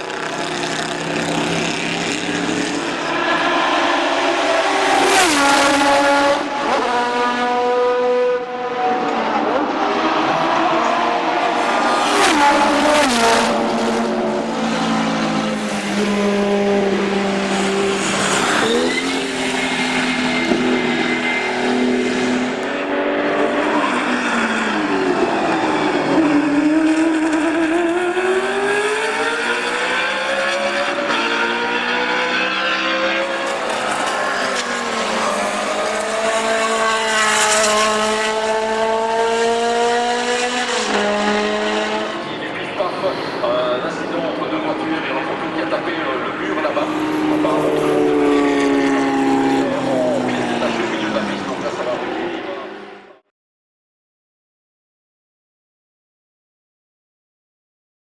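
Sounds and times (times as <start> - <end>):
racing car engines accelerating: 0.0 - 53.2.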